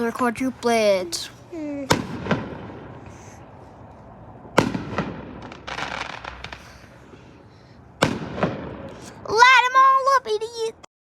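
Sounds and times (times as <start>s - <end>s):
firecracker bangs: 1.9s - 3.0s, 4.5s - 7.2s, 8.0s - 9.2s.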